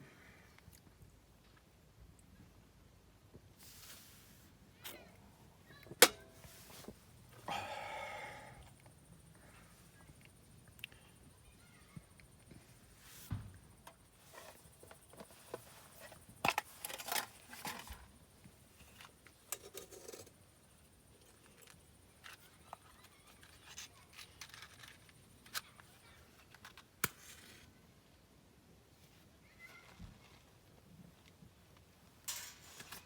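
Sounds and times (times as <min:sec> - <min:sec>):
rustling: 0:03.6 - 0:05.1.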